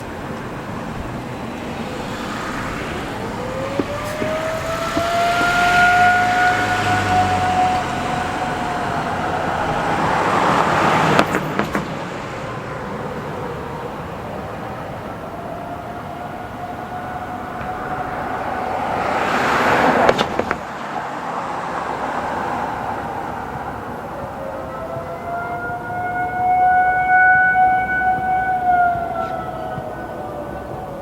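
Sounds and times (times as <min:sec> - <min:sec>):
road traffic passing: 0:00.0 - 0:31.0
warning siren winding up: 0:01.6 - 0:20.1, 0:23.9 - 0:31.0
sharp knocks: 0:10.3 - 0:12.4, 0:19.9 - 0:20.9.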